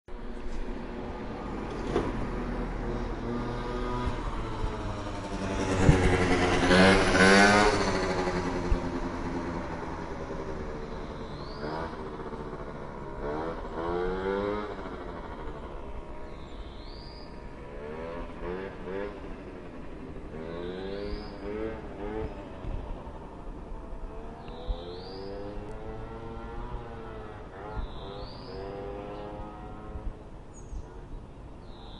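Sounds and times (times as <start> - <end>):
moped engine passing by: 0.2 - 30.9.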